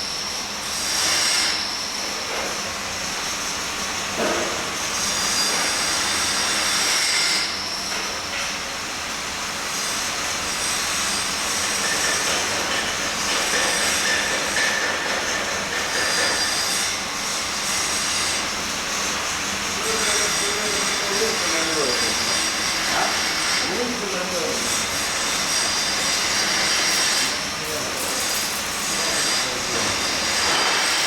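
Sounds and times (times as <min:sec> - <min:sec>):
electric arc welding hiss: 0:16.4 - 0:31.0.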